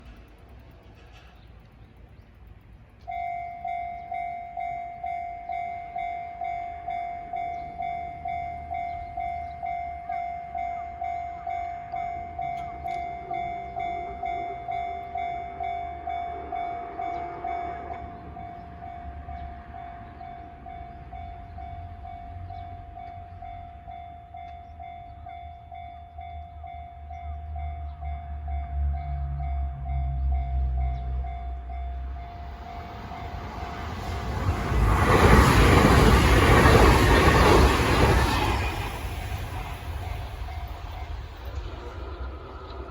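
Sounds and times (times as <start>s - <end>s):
train rumbling past: 0.0s - 42.9s
electronic level-crossing bell: 3.1s - 28.8s.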